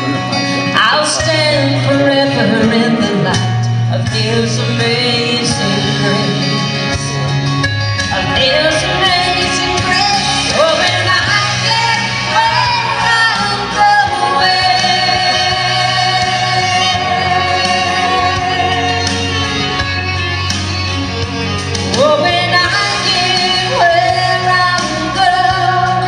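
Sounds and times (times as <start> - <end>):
band with guitar: 0.0 - 26.0
woman singing: 0.6 - 7.2, 8.1 - 19.6, 21.9 - 26.0.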